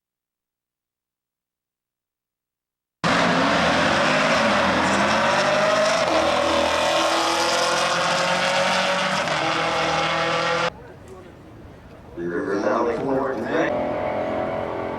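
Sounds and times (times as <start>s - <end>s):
race car engine accelerating: 3.0s - 10.7s, 13.4s - 14.9s.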